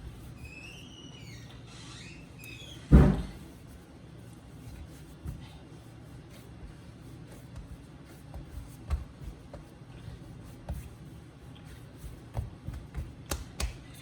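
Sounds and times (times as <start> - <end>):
hands kneading dough: 0.0 - 1.7, 2.3 - 14.0.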